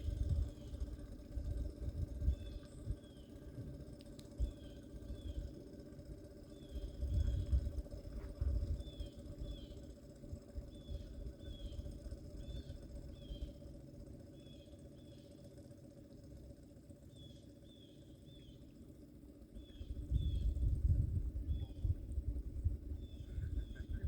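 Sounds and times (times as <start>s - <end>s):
low rumble: 19.8s - 24.0s.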